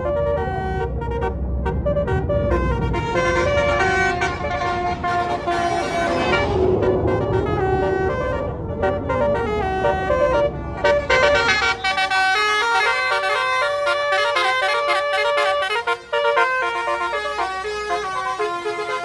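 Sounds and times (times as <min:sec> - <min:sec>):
bus engine rumbling: 0:00.0 - 0:19.0
musical bus horn melody: 0:00.0 - 0:19.0.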